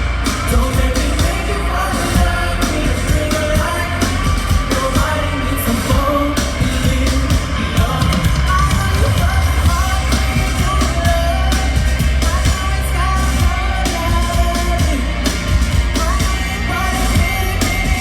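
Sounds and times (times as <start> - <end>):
person singing: 0.0 - 15.3
live concert music with heavy bass: 0.0 - 18.0.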